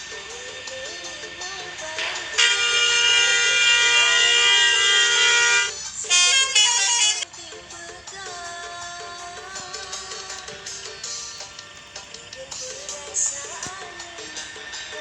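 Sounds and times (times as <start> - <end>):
multi-tone bus air horn: 1.9 - 7.2.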